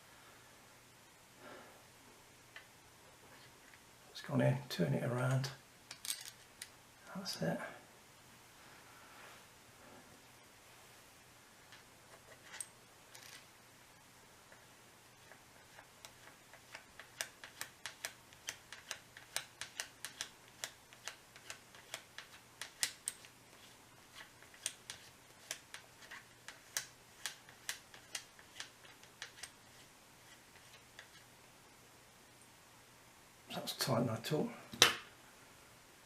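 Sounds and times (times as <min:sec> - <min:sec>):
hand tools clicking on small parts: 0:16.0 - 0:23.3.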